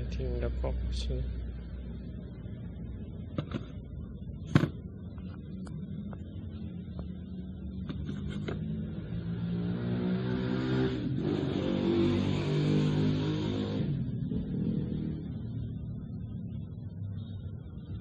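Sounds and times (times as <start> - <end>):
vehicle engine passing: 8.6 - 17.6.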